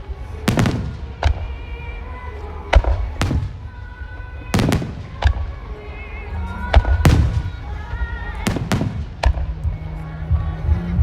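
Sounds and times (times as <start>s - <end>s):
firework shells bursting: 4.5s - 6.0s
music over loudspeakers: 4.5s - 11.0s.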